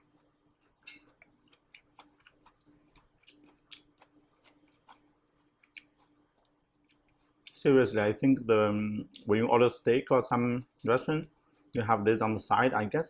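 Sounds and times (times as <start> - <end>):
chewing crunchy food: 0.0 - 7.6, 10.6 - 11.8
faint low hum: 0.0 - 13.0.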